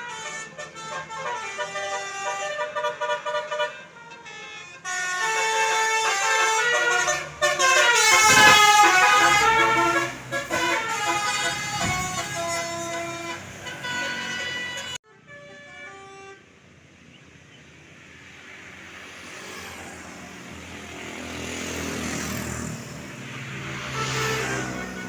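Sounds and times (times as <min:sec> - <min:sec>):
bus horn playing a melody: 0:00.0 - 0:16.7, 0:23.7 - 0:25.0
vehicle approaching: 0:17.4 - 0:25.0.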